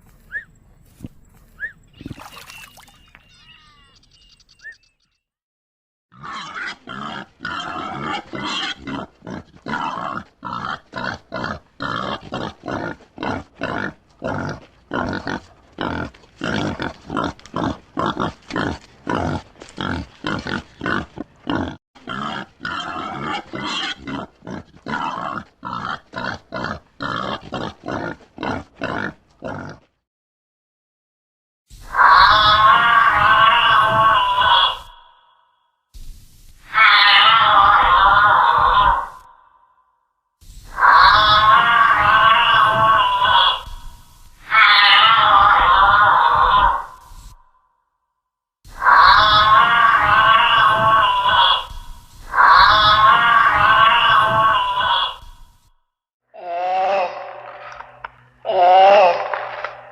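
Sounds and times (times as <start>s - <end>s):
animal calling in rapid pulses: 36.6s - 39.3s, 40.7s - 43.8s, 44.4s - 47.4s, 48.7s - 55.4s.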